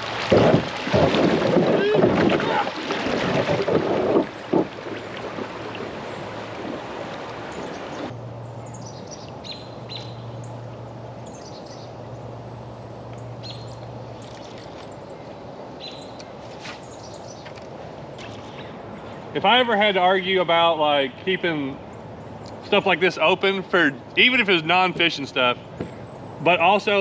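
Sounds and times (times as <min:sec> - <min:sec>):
wind noise: 0:00.0 - 0:08.1
creek water: 0:00.0 - 0:27.0
small birds chirping: 0:07.5 - 0:19.3.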